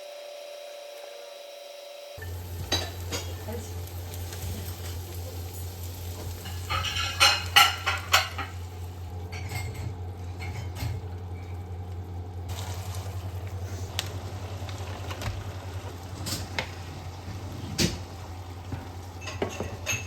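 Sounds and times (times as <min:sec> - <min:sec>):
utensil clinking and scraping in pan: 0:02.2 - 0:11.5, 0:18.8 - 0:20.0.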